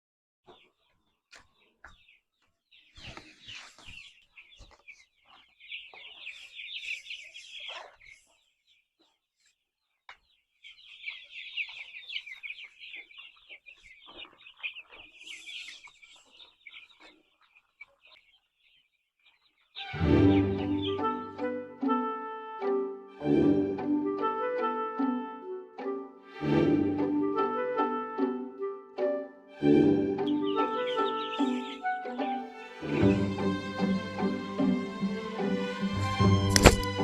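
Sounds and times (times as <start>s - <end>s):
chickens clucking and chirping: 0.5s - 21.3s, 30.2s - 35.0s
knocks and clicks: 36.0s - 37.0s.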